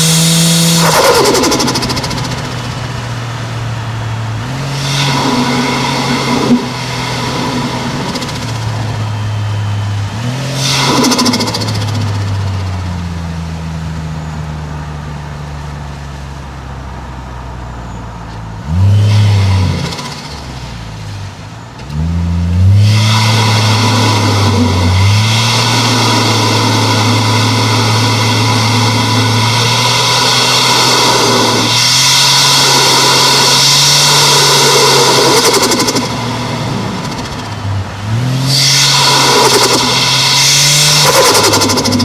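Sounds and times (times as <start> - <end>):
car engine revving: 0.0 - 42.0
turbo fluttering hiss: 10.4 - 12.6, 22.8 - 37.6, 38.3 - 42.0.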